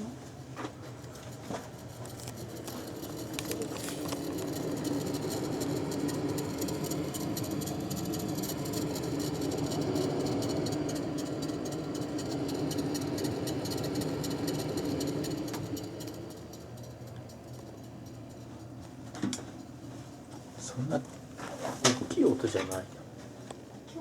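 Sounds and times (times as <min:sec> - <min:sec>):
fan unit drone: 0:00.0 - 0:24.0
fast fine rattle: 0:00.8 - 0:19.9.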